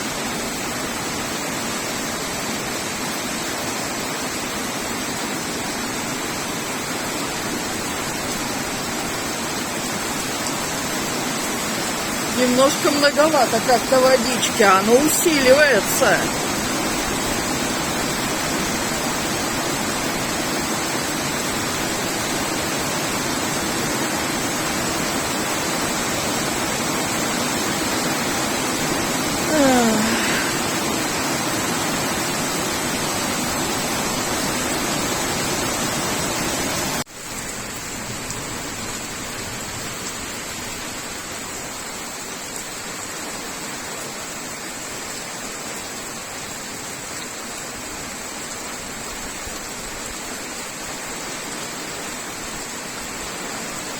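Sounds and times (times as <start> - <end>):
heavy rain pouring: 0.0 - 53.9.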